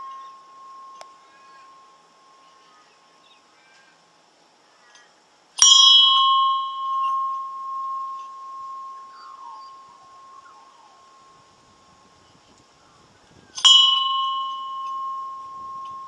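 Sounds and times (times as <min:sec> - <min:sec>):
brass bell ringing: 0:05.6 - 0:11.6, 0:13.6 - 0:16.0.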